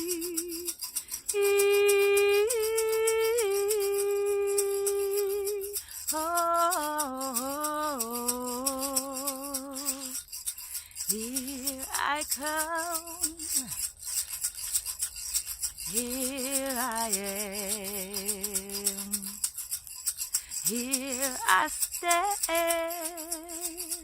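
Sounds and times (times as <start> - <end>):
woman singing wordless notes: 0.0 - 10.2, 11.0 - 13.8, 15.9 - 19.4, 20.5 - 24.0
hand rattle shaken: 0.0 - 24.0.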